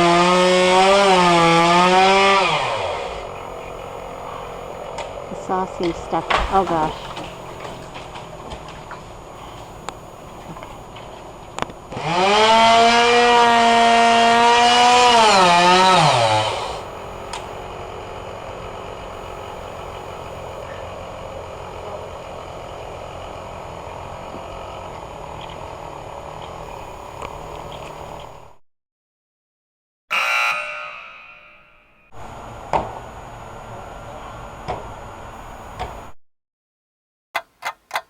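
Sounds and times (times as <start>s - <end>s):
chainsaw revving: 0.0s - 8.4s, 9.3s - 10.9s, 11.9s - 28.6s.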